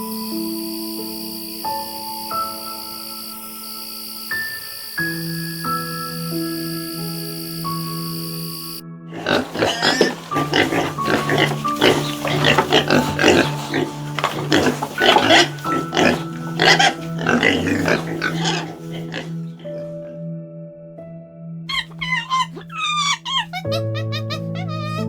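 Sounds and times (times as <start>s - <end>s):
background music: 0.0s - 25.0s
animal calling harshly: 9.1s - 20.0s, 21.7s - 25.0s.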